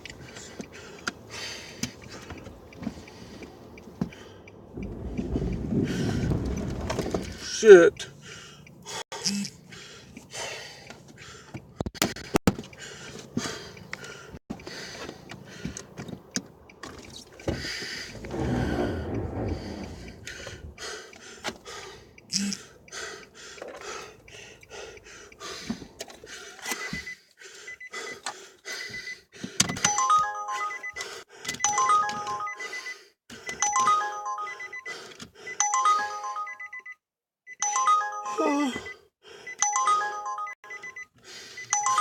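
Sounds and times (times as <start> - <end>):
phone ringtone chiming melody: 29.8 - 31.0, 31.6 - 32.8, 33.6 - 34.9, 35.6 - 39.0, 39.6 - 41.1, 41.7 - 42.0.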